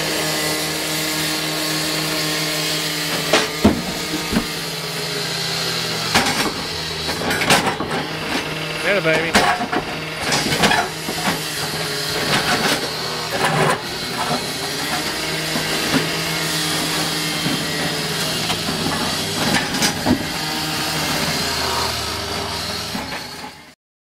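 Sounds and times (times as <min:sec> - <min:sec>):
sharp knocks: 0:03.2 - 0:04.7
diesel engine running: 0:03.2 - 0:23.6.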